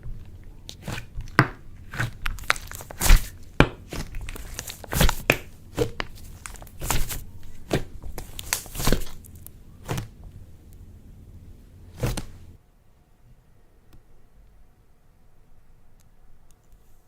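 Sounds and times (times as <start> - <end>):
slime squished by hand: 0.0 - 10.5, 11.9 - 12.5.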